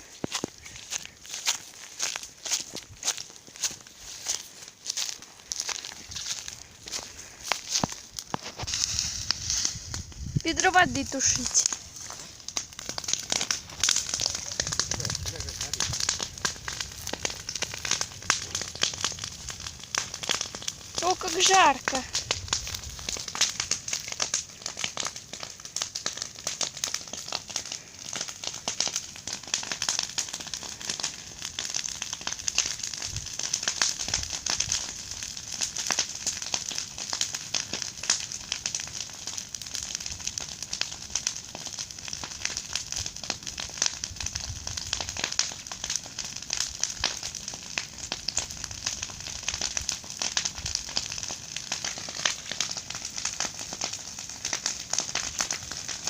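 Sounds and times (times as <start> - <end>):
bonfire crackling and popping: 0.0 - 56.0
low rush of flame: 6.4 - 10.5, 11.2 - 21.0, 22.1 - 36.5.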